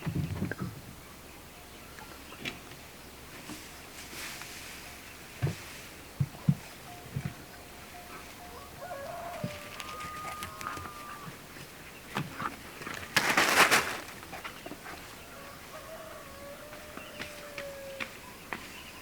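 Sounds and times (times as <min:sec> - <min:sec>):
roosters crowing: 0:08.4 - 0:11.6, 0:14.8 - 0:18.5.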